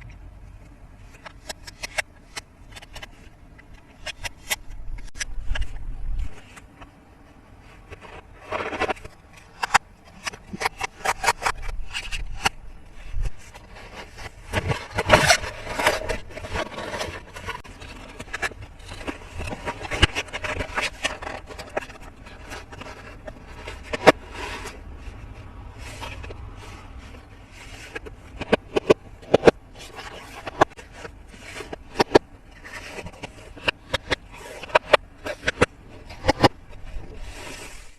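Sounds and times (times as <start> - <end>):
plastic toy pieces scraping: 7.6 - 37.9.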